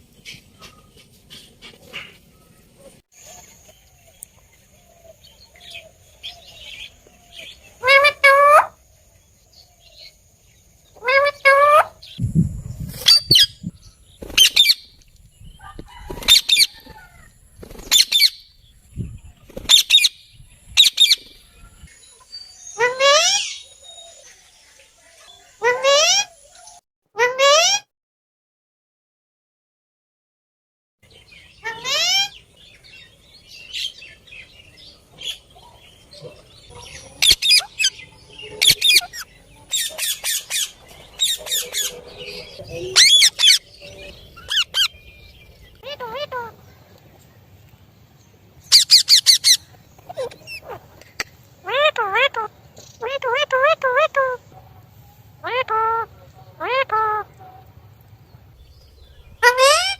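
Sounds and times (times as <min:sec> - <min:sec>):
parrot squawking: 0:07.8 - 0:08.8, 0:11.0 - 0:12.2, 0:14.4 - 0:14.9, 0:15.6 - 0:17.2, 0:17.9 - 0:18.5, 0:19.7 - 0:20.2, 0:20.8 - 0:21.3, 0:22.8 - 0:23.6, 0:25.6 - 0:26.4, 0:27.2 - 0:27.8, 0:31.6 - 0:32.4, 0:36.7 - 0:45.1, 0:45.8 - 0:46.6, 0:48.7 - 0:50.8, 0:51.6 - 0:54.4, 0:55.4 - 0:57.3, 0:59.0 - 0:59.9
low rumble: 0:12.2 - 0:14.2
soft parrot chirps: 0:36.7 - 0:42.0, 0:48.7 - 0:54.4, 0:58.7 - 0:59.9.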